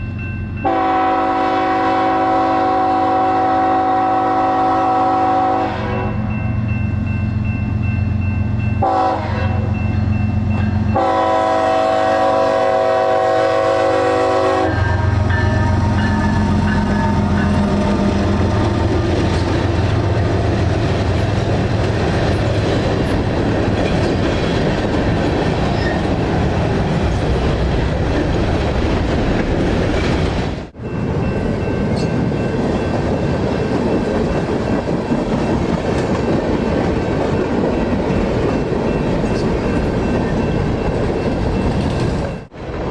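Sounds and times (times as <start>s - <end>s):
train horn: 0.6s - 6.4s, 8.8s - 9.8s, 10.9s - 18.8s
freight cars clattering on rails: 15.4s - 42.9s.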